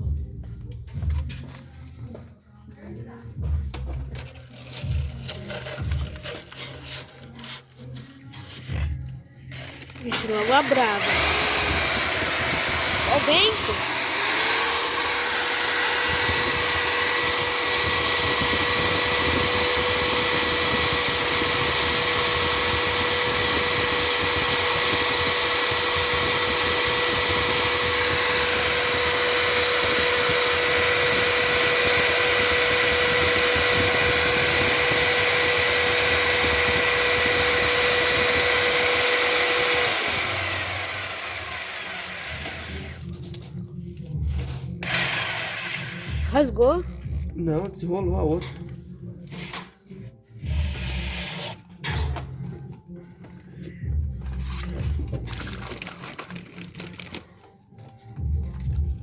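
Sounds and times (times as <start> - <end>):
electric air blower whining: 4.6 - 43.3, 44.2 - 47.3
blower motor winding down: 9.9 - 43.1.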